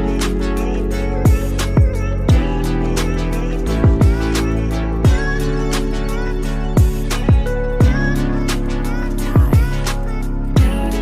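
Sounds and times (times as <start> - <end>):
deep kick drums: 1.3 - 2.7, 3.7 - 4.4, 5.1 - 5.5, 6.8 - 8.2, 9.4 - 9.8, 10.6 - 11.0.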